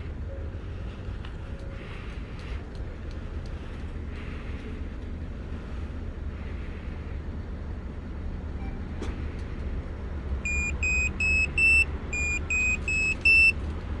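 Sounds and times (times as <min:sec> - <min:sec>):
steady low rumble: 0:00.0 - 0:14.0
car alarm rising chime of beeps: 0:10.4 - 0:13.6.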